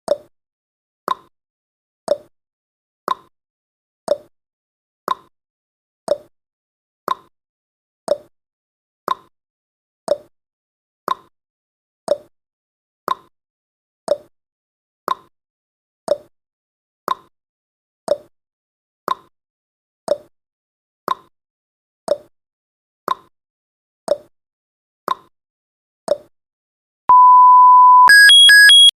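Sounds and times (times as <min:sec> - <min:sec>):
steady alarm beep: 0:27.1 - 0:28.9.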